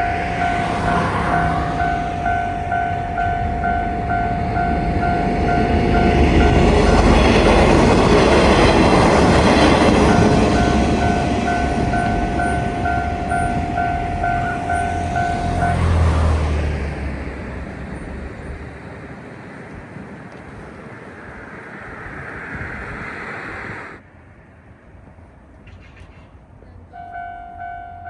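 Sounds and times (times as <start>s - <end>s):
level crossing alarm bell: 0.0s - 16.6s, 27.0s - 28.0s
train passing: 0.0s - 28.0s.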